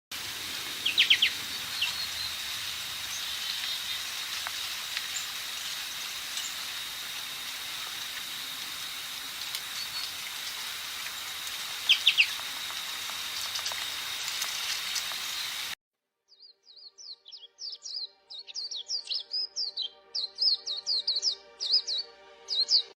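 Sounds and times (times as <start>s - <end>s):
steady high hiss: 0.1s - 15.8s
rapid bird chirps: 0.7s - 7.2s, 9.6s - 12.6s
bird calls with downward notes: 0.8s - 4.2s, 11.8s - 12.5s, 16.3s - 22.9s
continuous high thin tone: 0.8s - 15.8s.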